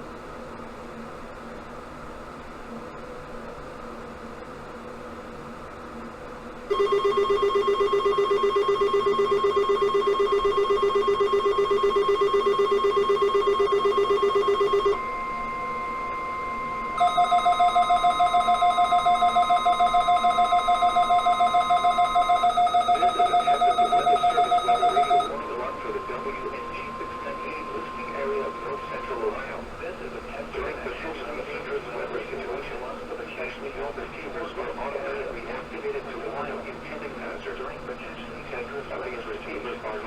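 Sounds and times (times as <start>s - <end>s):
pulsing electronic alert beeps: 6.7s - 29.3s
second pulsing alarm: 6.7s - 29.4s
steady alarm tone: 6.7s - 29.7s.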